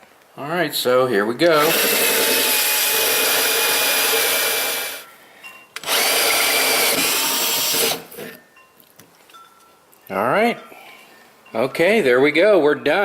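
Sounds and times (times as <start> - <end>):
electric drill boring into wood: 1.5 - 5.0, 5.8 - 8.4.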